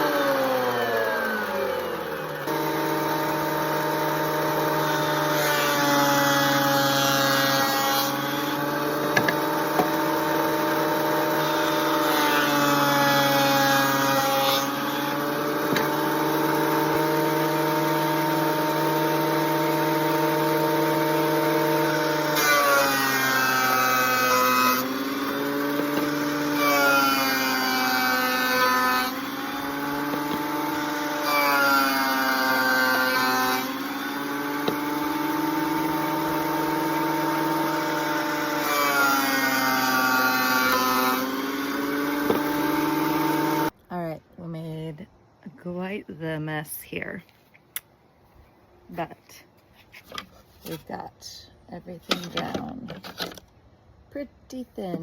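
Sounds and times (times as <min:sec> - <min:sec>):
board cutting through planer: 0:00.0 - 0:43.8
planer motor whine: 0:00.0 - 0:43.8.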